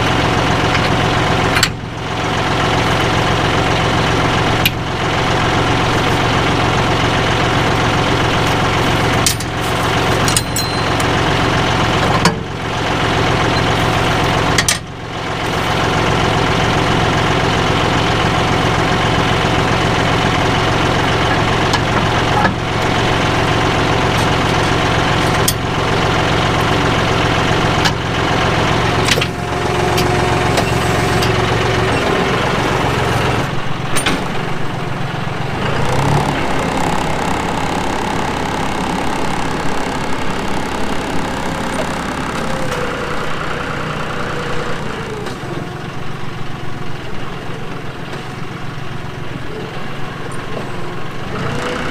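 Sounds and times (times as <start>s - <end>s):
tractor diesel engine running: 0.0s - 51.9s.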